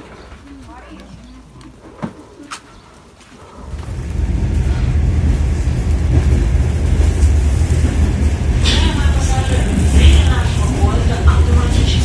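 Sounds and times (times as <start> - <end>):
train clicks: 1.6 - 12.0
electric train rumbling: 3.5 - 12.0.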